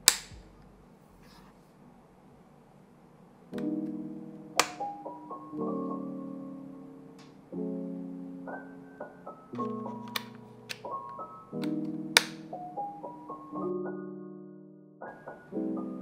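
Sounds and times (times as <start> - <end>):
soft piano music: 3.2 - 16.0.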